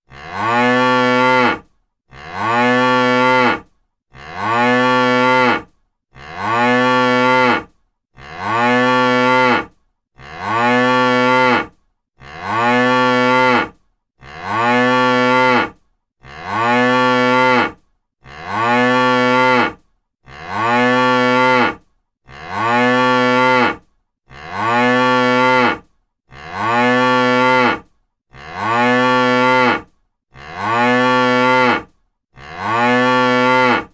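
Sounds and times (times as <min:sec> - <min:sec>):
cow mooing: 0:00.1 - 0:33.9.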